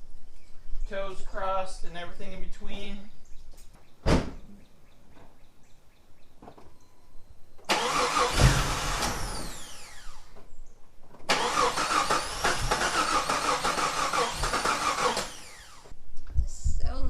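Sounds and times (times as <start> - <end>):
starter cranking engine: 7.7 - 10.4, 11.3 - 16.0.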